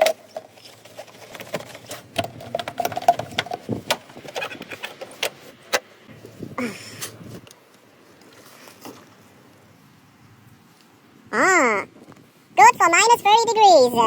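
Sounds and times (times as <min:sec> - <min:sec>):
tools clicking and knocking: 0:00.0 - 0:05.8.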